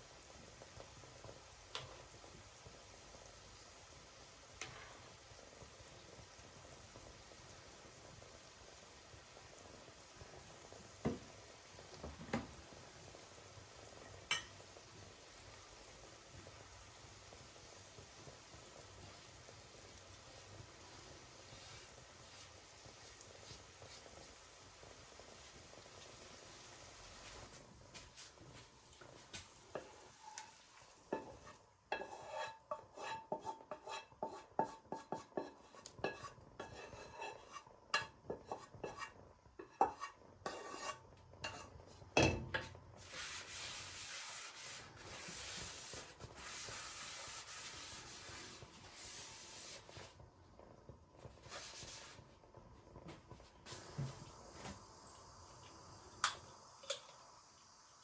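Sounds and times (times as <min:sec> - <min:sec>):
steady hiss: 0:00.0 - 0:32.7, 0:40.9 - 0:58.0
metal utensil clinking on cookware: 0:14.3 - 0:14.6.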